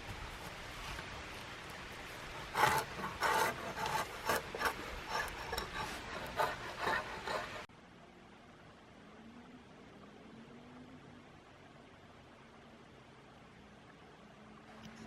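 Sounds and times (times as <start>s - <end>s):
knife scraping wood: 0.2s - 7.7s.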